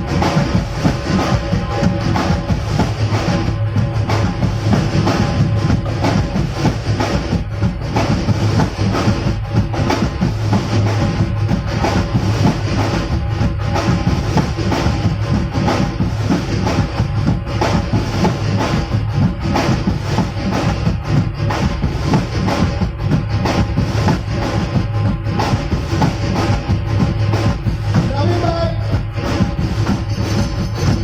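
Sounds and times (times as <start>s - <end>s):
loud music with drums and bass: 0.0s - 31.0s.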